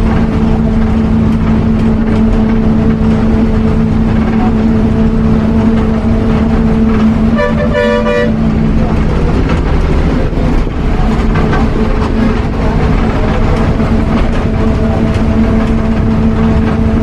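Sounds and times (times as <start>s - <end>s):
bus engine drone: 0.0s - 17.0s
road rumble: 0.0s - 17.0s
vehicle horn honking: 7.3s - 8.5s.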